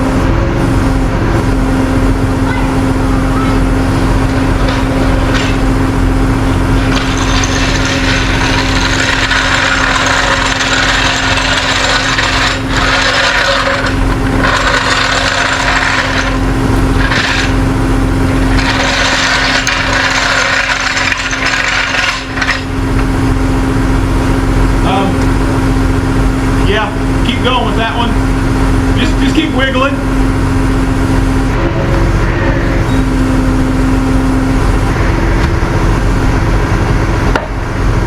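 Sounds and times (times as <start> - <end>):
vehicle engine running: 0.0 - 38.0
rough scraping rasping: 6.7 - 22.8.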